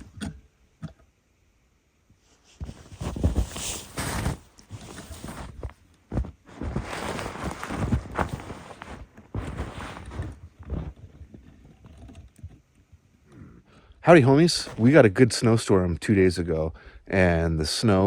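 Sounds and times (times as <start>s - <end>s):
footsteps in snow: 2.6s - 11.2s, 14.2s - 15.0s.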